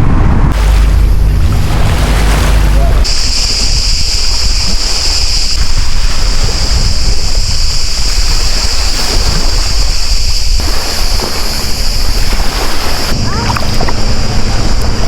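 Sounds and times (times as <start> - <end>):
sea waves washing: 0.0 - 15.0
wind buffeting microphone: 0.0 - 15.0
steady high-pitched hiss: 2.9 - 13.3.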